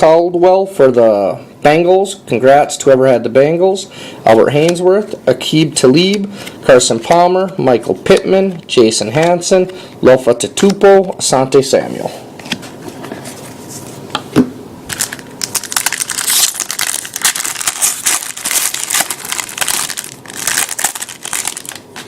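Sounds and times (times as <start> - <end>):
foil wrapper crinkling: 14.9 - 22.0.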